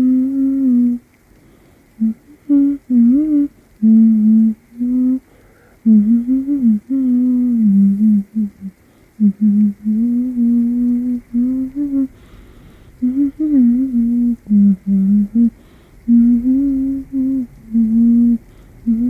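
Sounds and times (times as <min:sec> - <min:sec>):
person humming a tune: 0:00.0 - 0:01.1, 0:02.0 - 0:12.2, 0:13.0 - 0:19.0.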